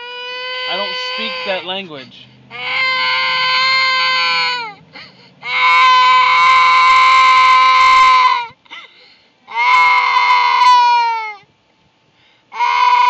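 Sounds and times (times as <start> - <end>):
young child wailing: 0.0 - 1.8, 2.5 - 4.8, 5.4 - 8.6, 9.5 - 11.5, 12.5 - 13.0.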